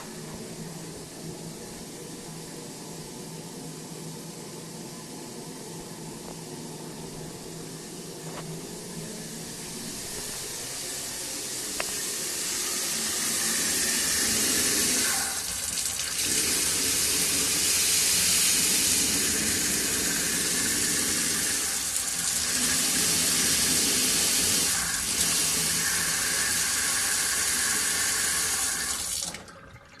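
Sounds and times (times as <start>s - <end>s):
tap water rushing: 0.0s - 1.1s, 9.4s - 30.0s.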